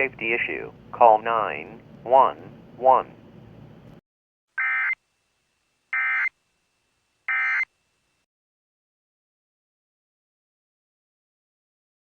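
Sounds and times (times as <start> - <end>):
digital data tone bursts: 7.3 - 7.7.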